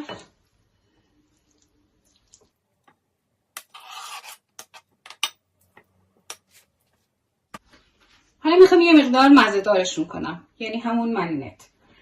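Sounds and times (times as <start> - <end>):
chicken scraped off a board: 3.6 - 4.4
kitchenware clicks and knocks: 5.1 - 5.4.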